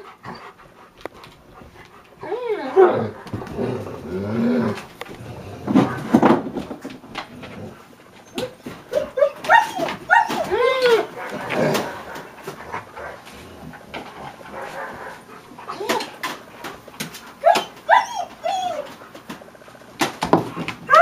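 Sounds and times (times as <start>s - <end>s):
dogs yipping and whining: 0.0s - 0.9s, 2.2s - 4.8s, 8.2s - 13.2s, 14.5s - 19.8s.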